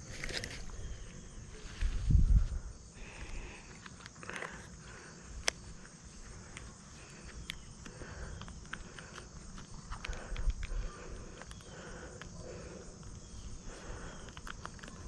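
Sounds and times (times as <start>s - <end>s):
insects humming: 0.0s - 15.0s
small clicks: 5.4s - 5.6s, 6.4s - 12.3s, 14.0s - 15.0s.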